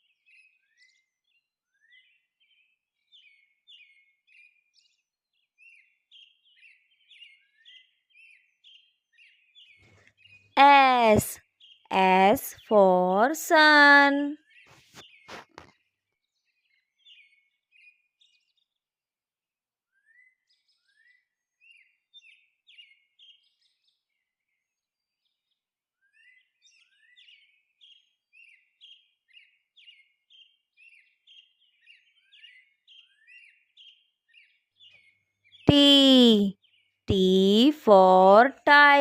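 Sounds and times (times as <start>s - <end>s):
small birds chirping: 26.2s - 39.0s.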